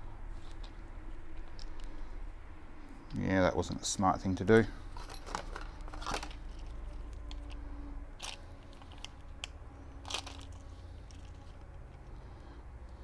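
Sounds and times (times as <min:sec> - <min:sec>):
low steady hum: 0:00.0 - 0:13.0
rustling scrapes: 0:04.8 - 0:09.3.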